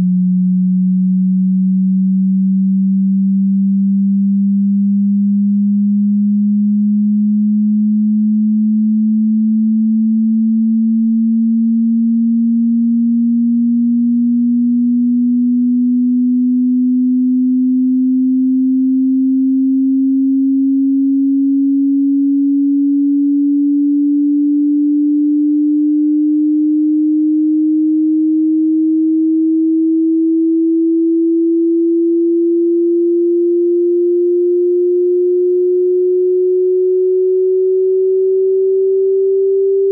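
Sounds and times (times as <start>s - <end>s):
rising sine-wave tone: 0.0s - 39.9s.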